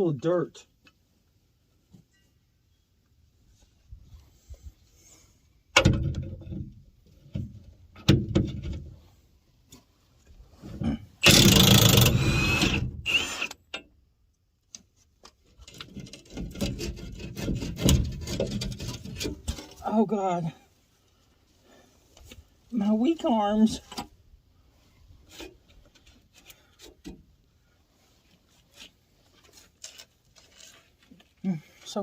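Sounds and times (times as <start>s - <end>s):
metallic knocks and clunks: 5.7s - 8.9s, 15.7s - 19.8s
impact wrench hammering: 11.2s - 12.7s.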